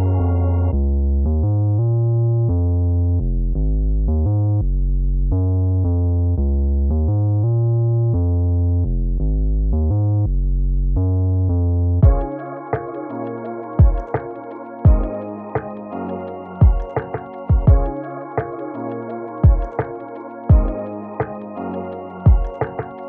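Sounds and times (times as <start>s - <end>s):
keyboard chords with bass: 0.0s - 23.0s
sharp musical hit: 12.0s - 23.0s.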